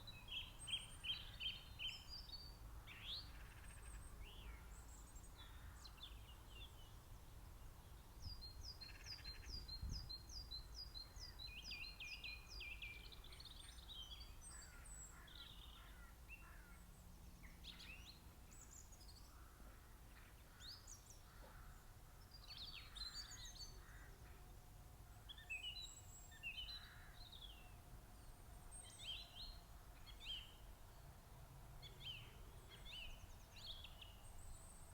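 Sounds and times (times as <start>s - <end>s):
songbirds singing and chirping: 0.0s - 34.9s.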